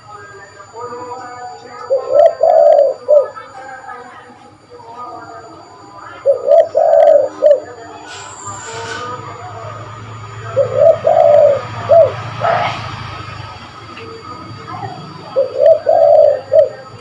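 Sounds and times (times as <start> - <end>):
dove cooing: 1.6 - 3.8, 6.2 - 8.0, 10.3 - 12.8, 14.7 - 17.0.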